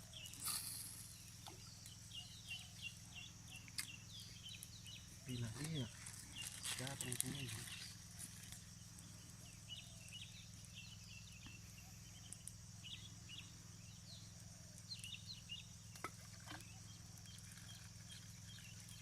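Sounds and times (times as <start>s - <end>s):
steady high hiss: 0.0s - 14.8s.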